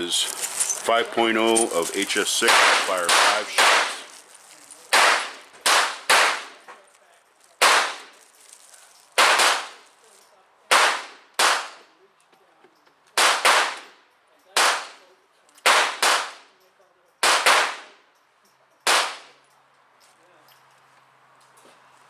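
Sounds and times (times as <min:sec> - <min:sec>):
gunshots with echo: 0:02.4 - 0:04.0.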